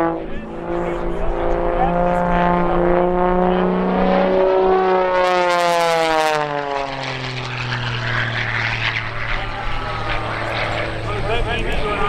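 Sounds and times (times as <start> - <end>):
model airplane motor and propeller: 4.2 - 12.0.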